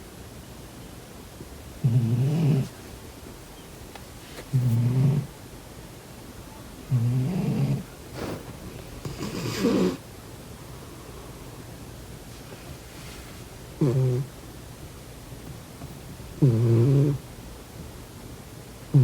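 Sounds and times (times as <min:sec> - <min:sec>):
cat snoring: 0:01.8 - 0:02.7, 0:04.5 - 0:05.3, 0:06.9 - 0:08.4, 0:09.0 - 0:10.0, 0:13.8 - 0:14.3, 0:16.4 - 0:17.2.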